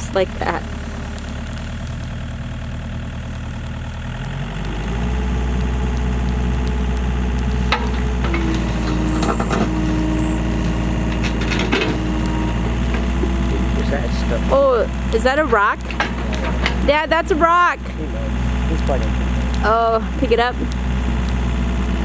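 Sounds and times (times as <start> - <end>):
excavator engine running: 0.0 - 22.0
clanks and scrapes of digging: 7.5 - 19.2.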